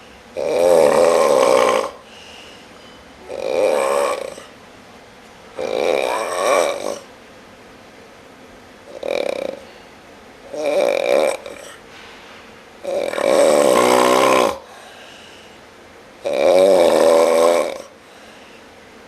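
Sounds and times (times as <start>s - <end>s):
man snoring loudly: 0.4s - 2.0s, 3.2s - 4.5s, 5.6s - 7.1s, 8.9s - 9.6s, 10.5s - 11.8s, 12.8s - 14.7s, 16.2s - 18.0s.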